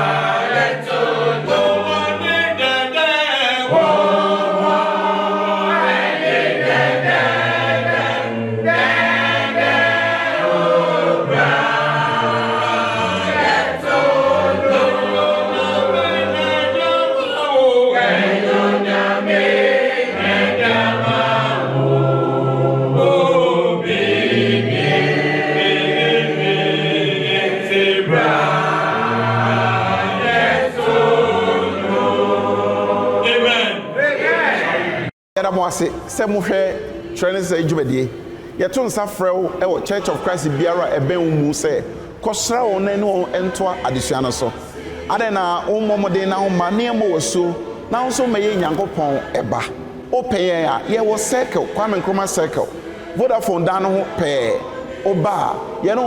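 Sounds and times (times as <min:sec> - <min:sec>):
choir singing a hymn: 0:00.0 - 0:56.0.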